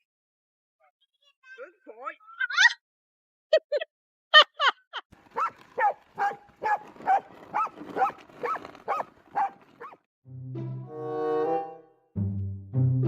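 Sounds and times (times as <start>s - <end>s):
dog yelping: 2.4s - 2.8s, 5.3s - 10.0s
dog barking: 5.3s - 10.0s.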